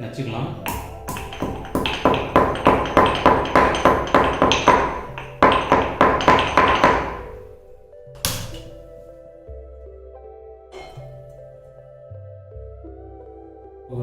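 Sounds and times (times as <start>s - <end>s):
pestle striking mortar: 0.6s - 8.8s.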